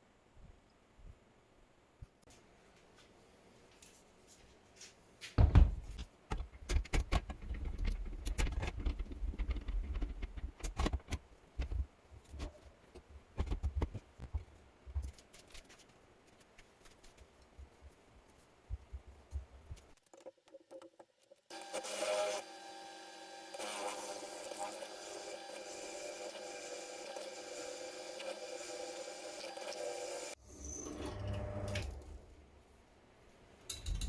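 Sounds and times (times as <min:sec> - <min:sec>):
hard objects clicking and knocking: 0:05.4 - 0:15.3.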